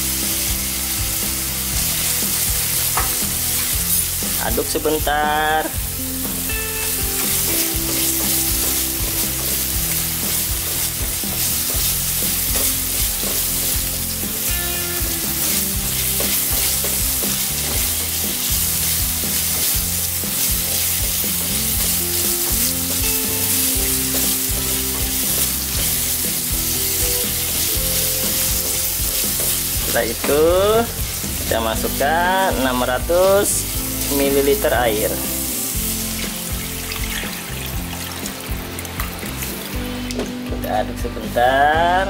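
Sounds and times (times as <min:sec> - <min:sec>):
vegetables sizzling in hot oil: 0:00.0 - 0:41.6
utensil stirring and scraping pan: 0:07.2 - 0:31.6.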